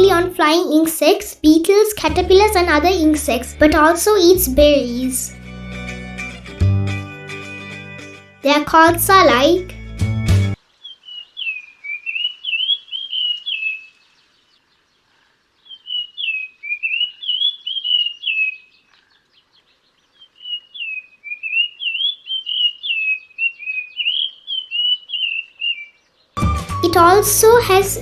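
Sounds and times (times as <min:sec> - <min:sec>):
bird singing whistled notes: 0:10.8 - 0:14.5, 0:15.6 - 0:28.0.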